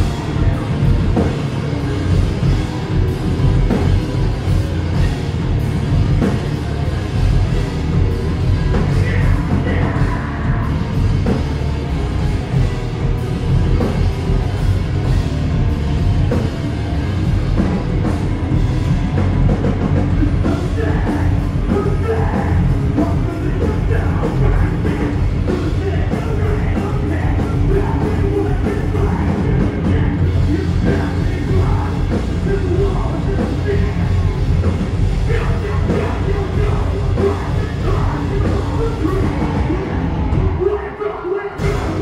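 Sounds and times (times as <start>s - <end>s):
bass: 0.0s - 42.0s
distorted guitars: 0.0s - 42.0s
drums: 0.0s - 42.0s
yelled vocals: 0.0s - 42.0s.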